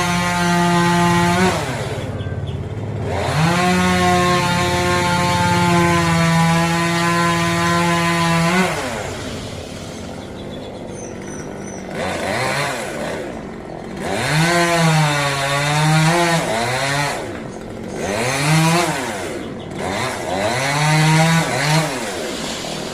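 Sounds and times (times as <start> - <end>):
chainsaw cutting wood: 0.0 - 22.9.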